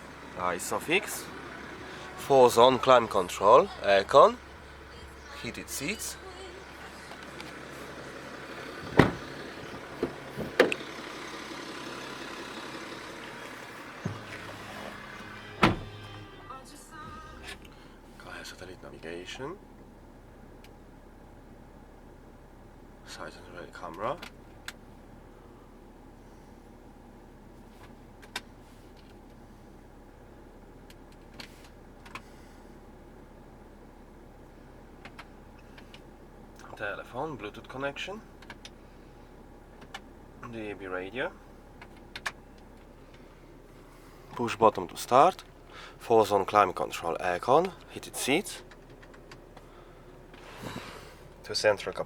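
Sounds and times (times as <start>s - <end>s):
steady low hum: 0.0s - 11.0s, 13.2s - 52.0s
sharp knocks: 8.8s - 9.3s
switch clicks in a car: 41.8s - 43.2s.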